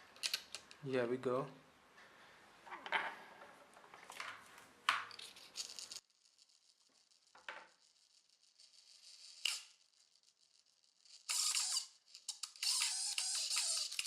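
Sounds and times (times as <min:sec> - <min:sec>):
small metal parts clicking: 0:11.1 - 0:14.0.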